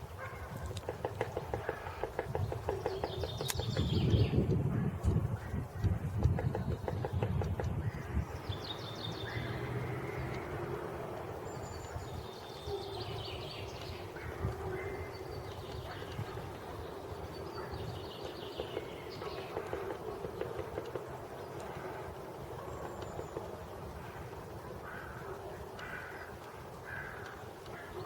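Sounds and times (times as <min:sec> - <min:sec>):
songbirds trilling: 0:00.0 - 0:04.6, 0:05.4 - 0:28.0
woodpecker tapping on wood: 0:00.2 - 0:05.2, 0:05.8 - 0:08.6, 0:13.7 - 0:21.9, 0:22.6 - 0:23.7.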